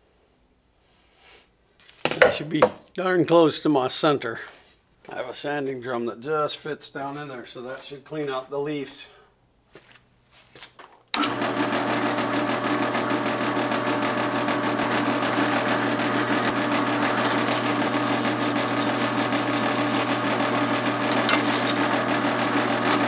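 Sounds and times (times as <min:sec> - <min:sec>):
electric drill whirring: 0:11.2 - 0:23.0.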